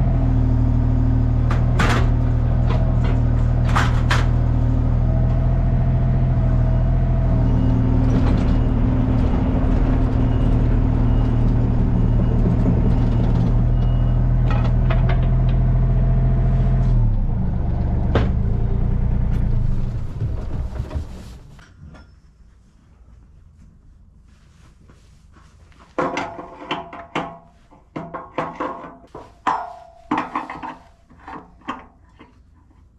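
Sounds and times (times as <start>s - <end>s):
heavy engine running: 0.0s - 21.6s.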